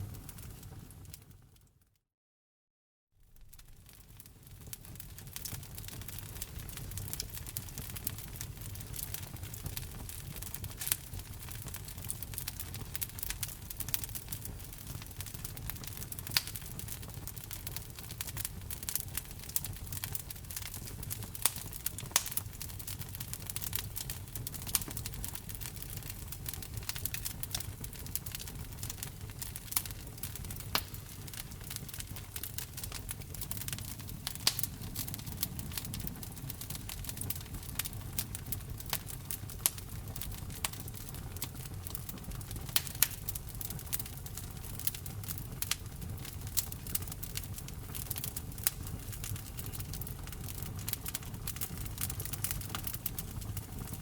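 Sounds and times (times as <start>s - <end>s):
burning logs crackling and popping: 0.0s - 1.6s, 3.3s - 54.0s
low rumble of flames: 0.0s - 1.6s, 3.2s - 54.0s.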